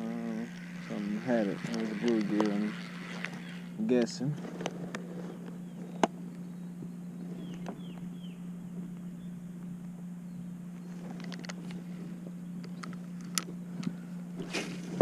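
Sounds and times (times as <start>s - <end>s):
steady low hum: 0.0s - 15.0s
faint bird chirps: 5.6s - 9.4s.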